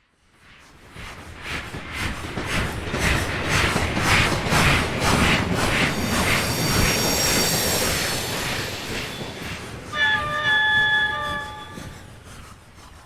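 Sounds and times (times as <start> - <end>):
steam locomotive chuffing: 1.2 - 13.0
low rumble: 5.0 - 9.9.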